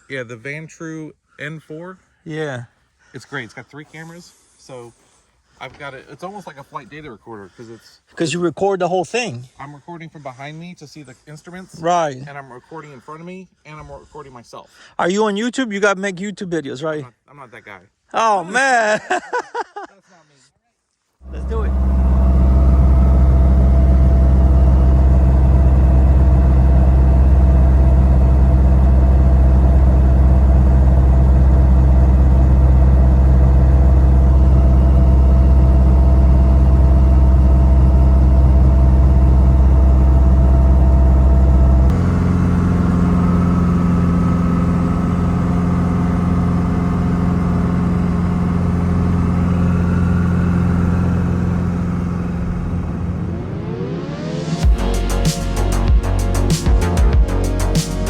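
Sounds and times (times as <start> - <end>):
helicopter engine and rotor drone: 21.3 - 55.2.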